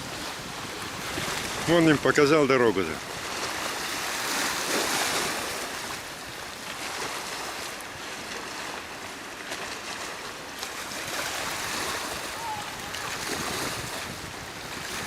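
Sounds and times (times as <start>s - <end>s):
wind noise on microphone: 0.0s - 7.7s, 10.8s - 15.0s
small waves lapping: 0.0s - 15.0s.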